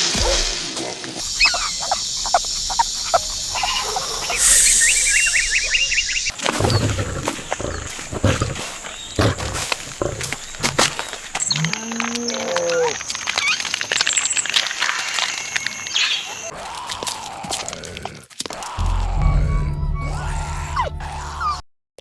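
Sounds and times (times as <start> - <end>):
animal hissing: 0.0 - 11.8
quick chirps: 1.2 - 11.4
low thuds: 18.8 - 21.6.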